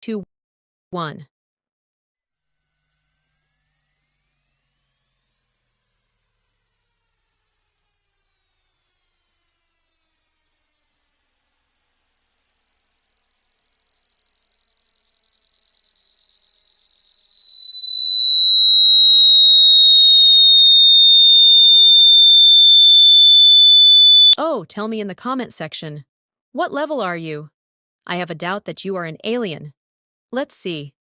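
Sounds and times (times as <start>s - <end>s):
pure test tone gliding downward: 3.5s - 24.4s.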